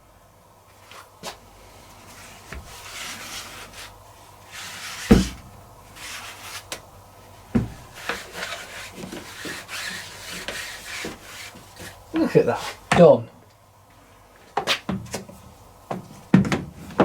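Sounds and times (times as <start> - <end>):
soft rubbing and rustling: 0.7 - 12.9
dull knocks on dryer: 5.1 - 5.6, 7.5 - 7.9.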